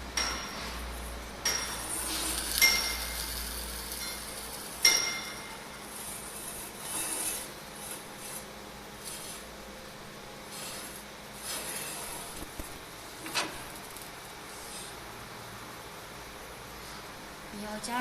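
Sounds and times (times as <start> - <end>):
electrical hum: 0.0 - 18.0
metal scraping and rubbing: 1.6 - 9.6, 10.5 - 13.8.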